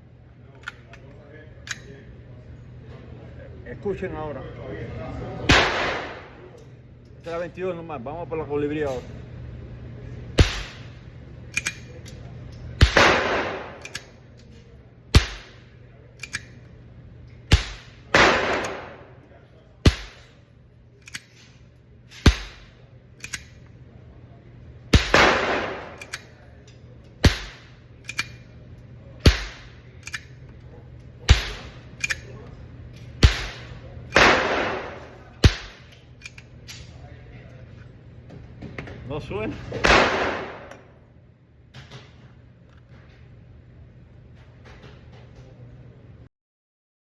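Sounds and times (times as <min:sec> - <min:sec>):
small pistol shots popping: 0:10.4 - 0:10.9, 0:19.8 - 0:20.3
gunshot report: 0:12.8 - 0:13.8.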